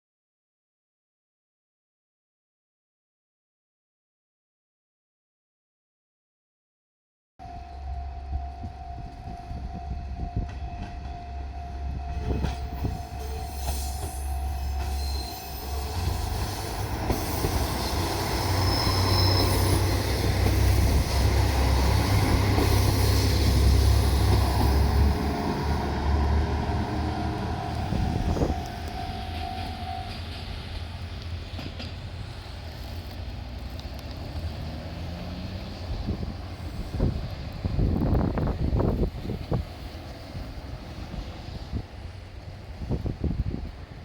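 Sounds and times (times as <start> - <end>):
diesel railcar rumble: 7.4 - 44.0
high wheel squeal: 12.1 - 30.5.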